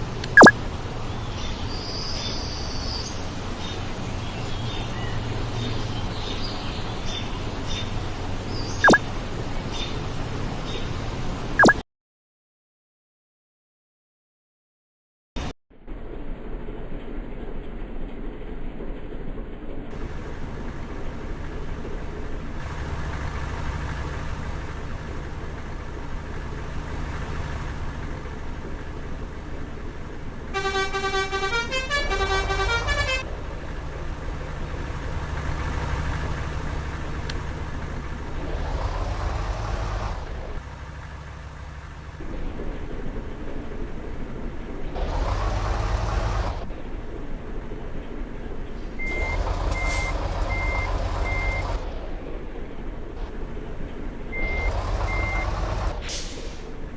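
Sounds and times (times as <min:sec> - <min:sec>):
heavy vehicles passing: 0:19.9 - 0:56.9
bus musical horn tune: 0:30.4 - 0:33.5.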